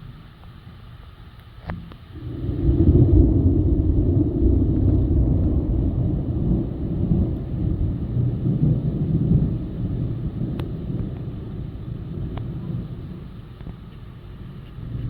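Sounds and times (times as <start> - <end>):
loud rolling thunder: 2.1 - 15.0.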